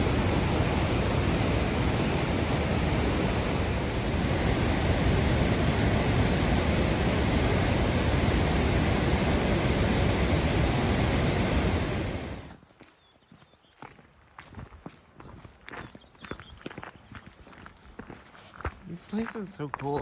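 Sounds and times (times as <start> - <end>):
waterfall roaring: 0.0 - 12.6.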